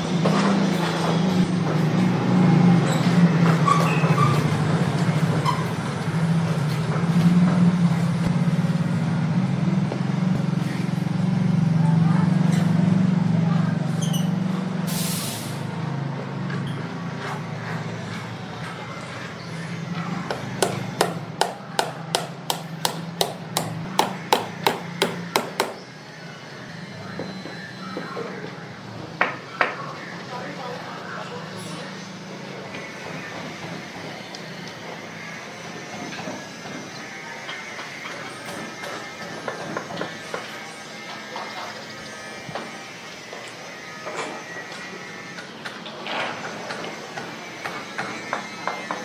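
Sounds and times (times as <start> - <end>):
hand hammer blows: 20.3 - 25.8.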